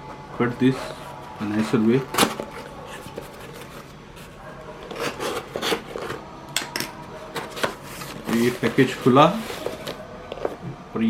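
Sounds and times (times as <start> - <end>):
knife cutting packaging: 4.8 - 6.2
wrapping rustling: 7.5 - 10.6.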